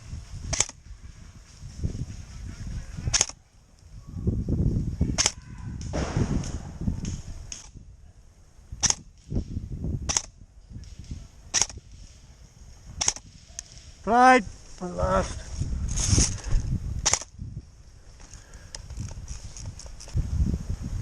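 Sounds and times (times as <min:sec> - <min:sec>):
airsoft gun shots: 0:00.5 - 0:00.8, 0:05.2 - 0:06.8, 0:08.8 - 0:09.4, 0:10.0 - 0:12.1, 0:13.0 - 0:13.3.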